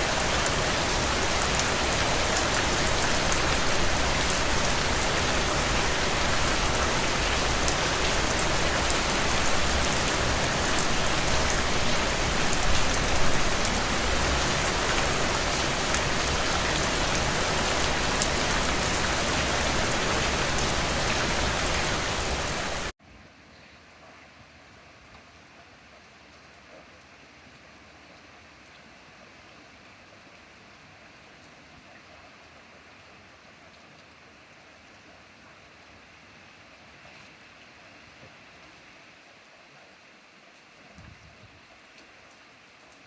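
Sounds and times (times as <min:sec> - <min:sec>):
heavy rain pouring: 0:00.0 - 0:23.0.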